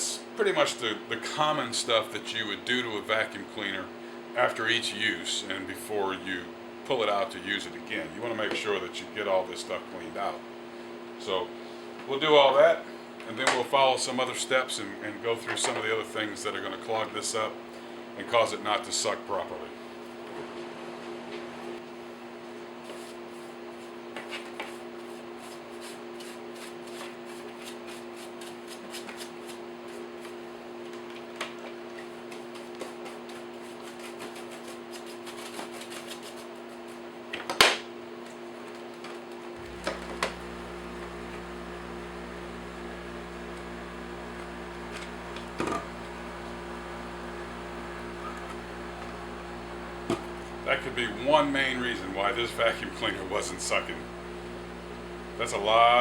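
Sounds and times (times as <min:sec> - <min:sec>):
electrical hum: 0:00.0 - 0:56.0
loud plastic snap: 0:37.4 - 0:37.9.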